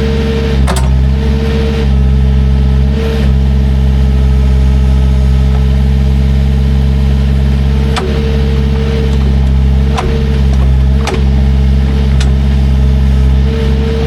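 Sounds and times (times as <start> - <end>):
heavy equipment engine running: 0.0 - 14.0
short metal clank: 7.9 - 12.8.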